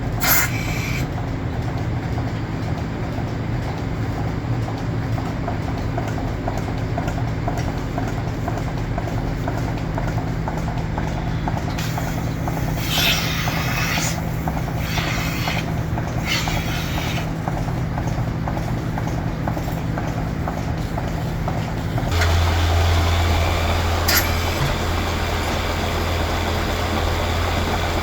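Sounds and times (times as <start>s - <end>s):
milking machine hum with clicking: 0.0s - 28.0s
hissing bursts: 0.2s - 1.0s, 11.8s - 17.3s.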